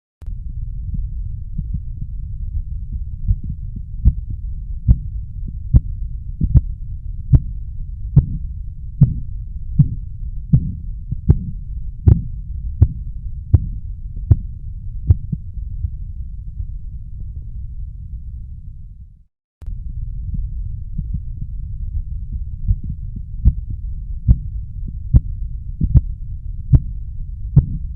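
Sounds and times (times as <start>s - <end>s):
steady low rumble: 0.2s - 27.9s
heartbeat taps through stethoscope: 2.9s - 4.3s, 4.9s - 6.7s, 7.3s - 7.5s, 8.2s - 14.5s, 15.1s - 15.4s, 22.3s - 23.7s, 24.3s - 26.1s, 26.7s - 26.9s, 27.6s - 27.9s.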